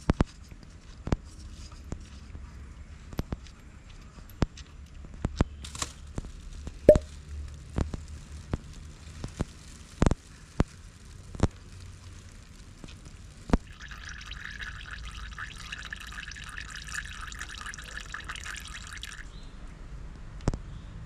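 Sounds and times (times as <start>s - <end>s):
oil pouring into a container: 13.7s - 19.3s.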